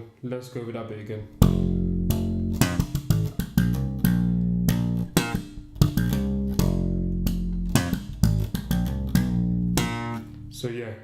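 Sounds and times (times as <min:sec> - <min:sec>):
electric bass riff: 0:01.3 - 0:10.8.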